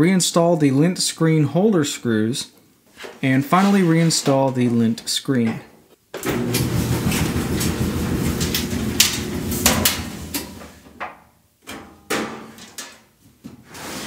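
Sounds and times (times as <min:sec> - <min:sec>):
clothes dryer running: 0:06.2 - 0:11.0
dryer clunk: 0:06.2 - 0:12.9.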